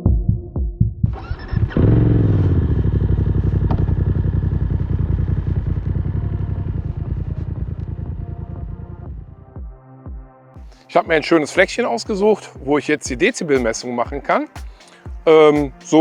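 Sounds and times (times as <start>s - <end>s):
electronic music beat: 0.0s - 1.1s, 8.4s - 16.0s
motorcycle engine idling: 1.1s - 9.5s.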